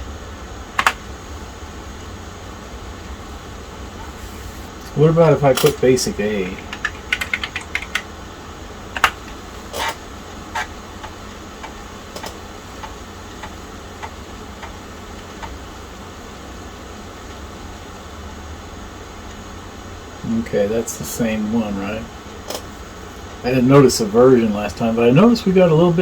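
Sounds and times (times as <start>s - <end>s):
steady low hum: 0.0s - 26.0s
keyboard keys clicking: 0.8s - 1.0s, 6.4s - 8.1s.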